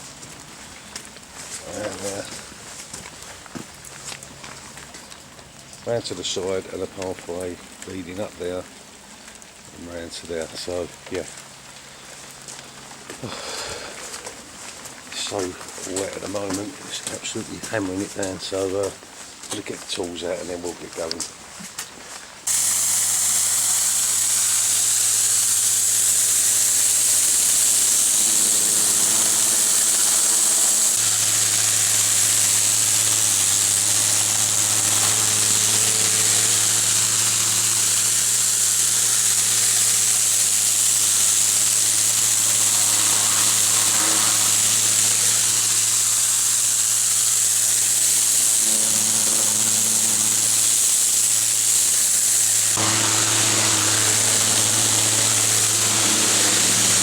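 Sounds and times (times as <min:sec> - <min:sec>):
pressure washer water jet hissing: 0:01.3 - 0:02.6, 0:09.8 - 0:19.0, 0:22.4 - 0:57.0
engine humming: 0:25.8 - 0:57.0.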